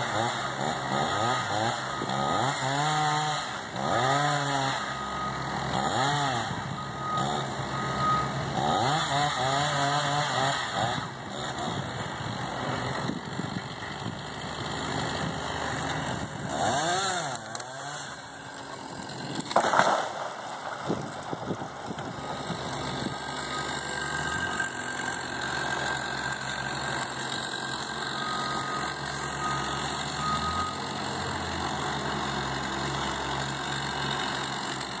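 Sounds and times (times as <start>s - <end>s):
chainsaw revving while cutting: 0.0s - 35.0s
machinery engine running: 11.0s - 35.0s.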